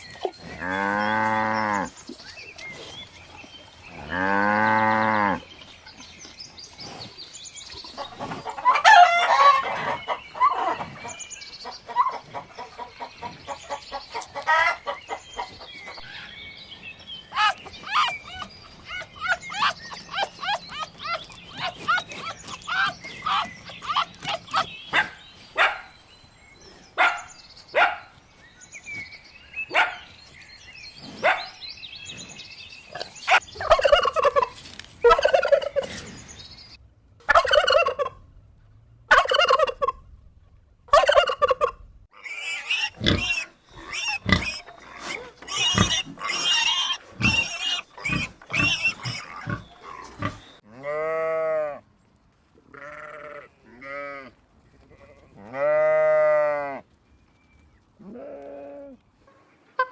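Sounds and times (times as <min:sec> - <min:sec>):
turkeys gobbling: 0:08.0 - 0:16.3, 0:17.3 - 0:25.8, 0:33.3 - 0:36.0, 0:37.3 - 0:38.2, 0:39.1 - 0:40.0, 0:40.9 - 0:50.4.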